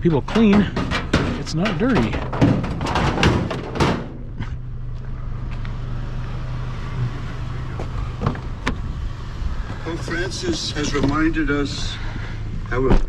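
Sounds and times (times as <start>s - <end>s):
knocks and handling noise: 0.0s - 5.1s
vehicle engine humming: 0.0s - 13.0s.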